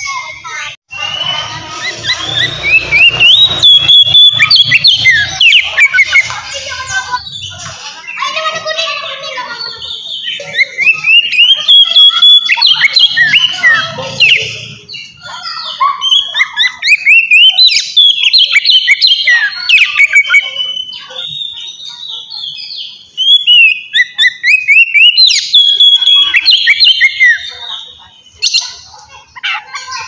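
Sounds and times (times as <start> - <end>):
bird singing whistled song: 0.9 - 6.3, 9.9 - 15.2, 16.0 - 28.9.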